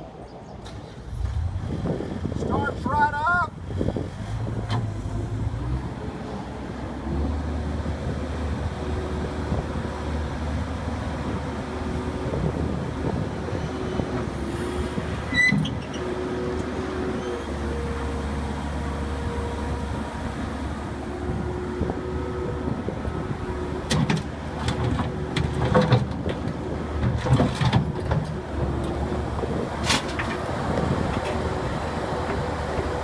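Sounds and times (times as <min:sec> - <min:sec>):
loader engine drone: 0:00.0 - 0:33.0
metal clanks and knocks: 0:23.9 - 0:28.4.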